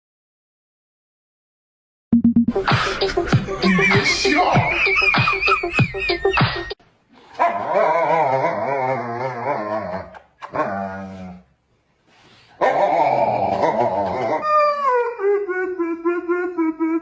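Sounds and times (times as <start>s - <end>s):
dog howling: 7.5s - 11.4s, 12.6s - 17.0s.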